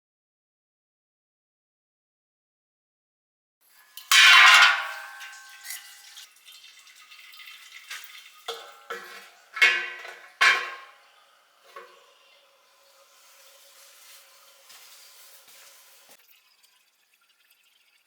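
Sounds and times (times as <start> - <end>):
metallic clanks: 4.0 - 6.0, 8.5 - 11.0.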